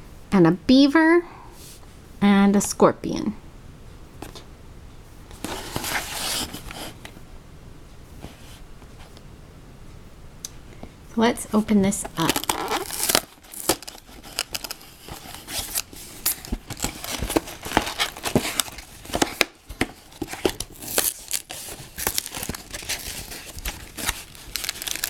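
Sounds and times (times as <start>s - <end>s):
cardboard box tearing and crinkling: 12.2s - 25.0s.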